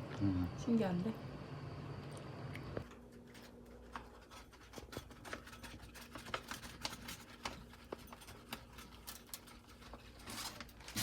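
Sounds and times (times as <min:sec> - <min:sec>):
low room hum: 0:00.0 - 0:11.0
small clicks and scratches: 0:02.8 - 0:11.0.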